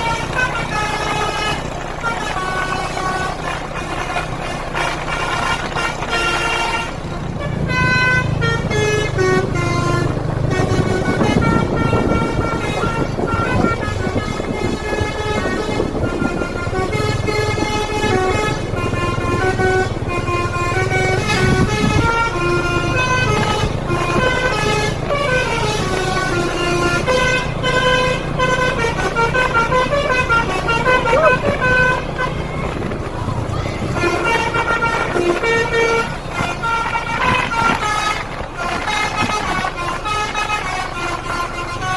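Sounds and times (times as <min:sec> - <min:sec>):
low engine hum: 0:00.0 - 0:41.9
musical air horn melody: 0:00.0 - 0:41.9.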